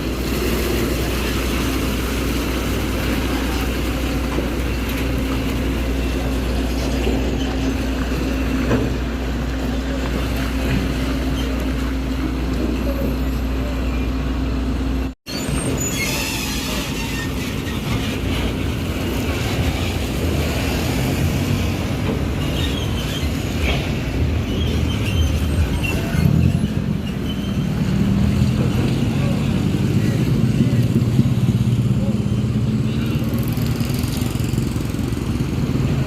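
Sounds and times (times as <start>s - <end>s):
heavy diesel engines running: 0.0s - 36.0s.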